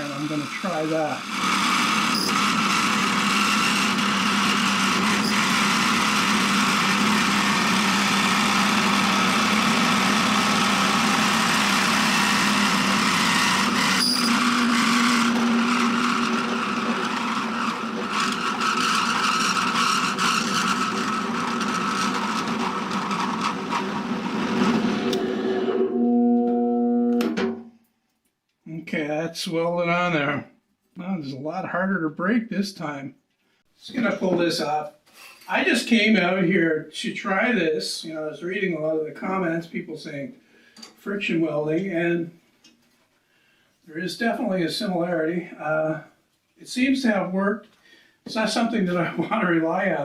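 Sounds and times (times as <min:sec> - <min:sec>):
drill press motor whine: 0:00.2 - 0:27.5.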